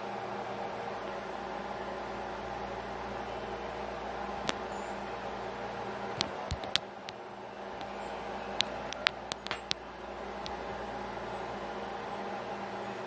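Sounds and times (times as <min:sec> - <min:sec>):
room noise hum and hiss: 0:00.0 - 0:13.0
sharp short clicks: 0:06.2 - 0:07.2, 0:08.6 - 0:09.8.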